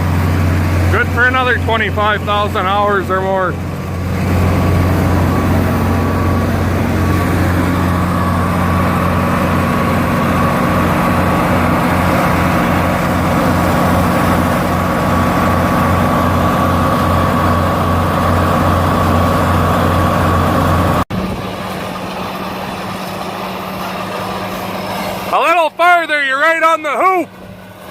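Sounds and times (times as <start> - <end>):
high whine: 0.0 - 27.9
large engine running steadily: 0.0 - 27.9.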